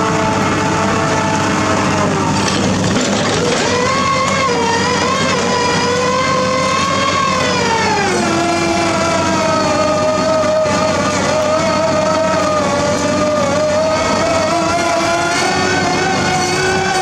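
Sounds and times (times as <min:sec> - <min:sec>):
diesel engine running: 0:00.0 - 0:17.0
pitched engine whine: 0:00.0 - 0:17.0.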